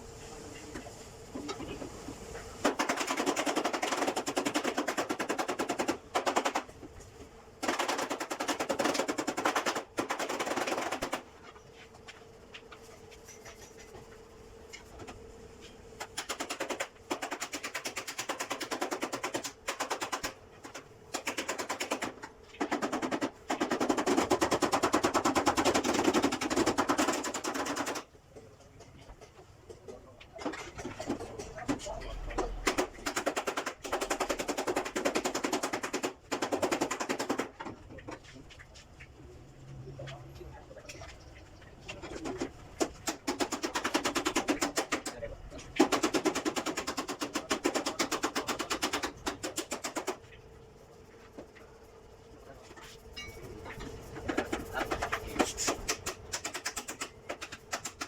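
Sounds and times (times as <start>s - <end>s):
power tool hammering: 16.0s - 28.1s, 42.8s - 45.2s, 45.8s - 50.2s, 54.3s - 58.0s.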